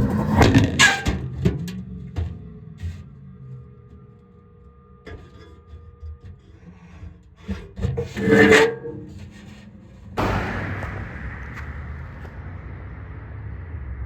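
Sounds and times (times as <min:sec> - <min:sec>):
train passing: 0:09.9 - 0:14.0.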